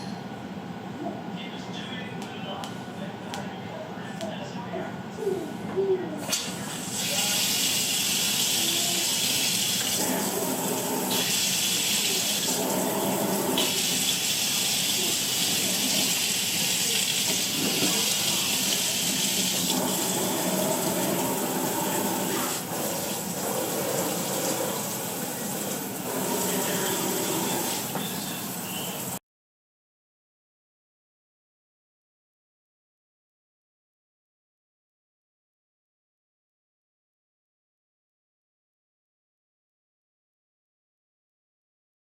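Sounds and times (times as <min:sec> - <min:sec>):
faucet water running into sink: 0:06.4 - 0:29.2.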